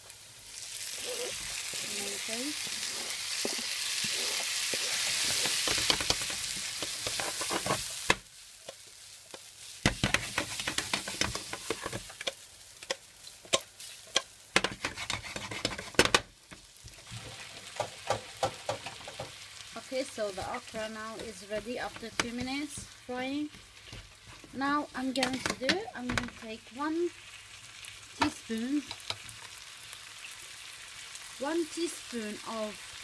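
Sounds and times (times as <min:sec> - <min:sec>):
food sizzling in a pan: 0:00.0 - 0:33.0
spoon stirring and knocking pan: 0:02.6 - 0:19.4, 0:20.3 - 0:26.5.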